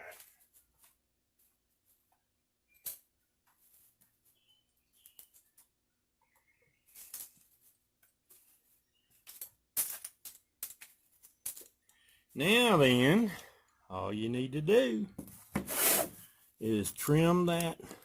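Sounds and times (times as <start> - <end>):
brief scraping: 15.6 - 16.3.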